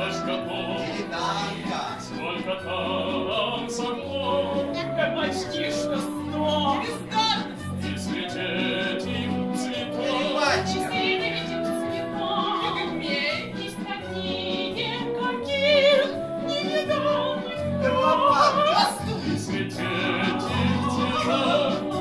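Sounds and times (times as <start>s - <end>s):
person singing: 7.8s - 22.0s.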